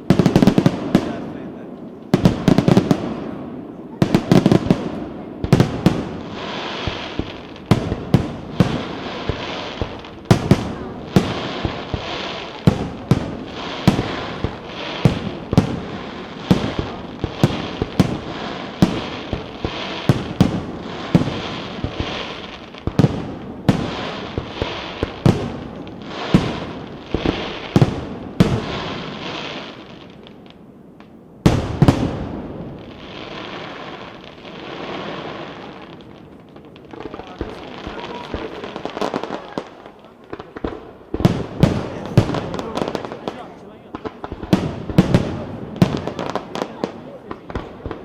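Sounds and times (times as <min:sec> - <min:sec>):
fireworks bangs: 0:00.0 - 0:48.0
fireworks crackling: 0:00.0 - 0:48.0.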